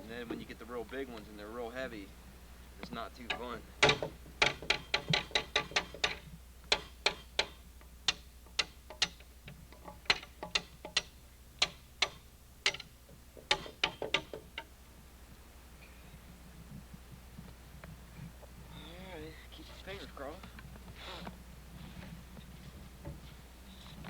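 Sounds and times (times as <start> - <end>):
hand tool knocking on log: 2.8 - 14.7.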